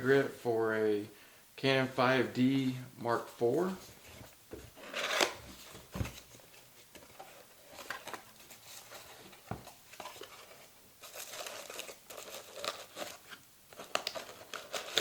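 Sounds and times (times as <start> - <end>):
packaging crinkling and rustling: 4.7 - 15.0.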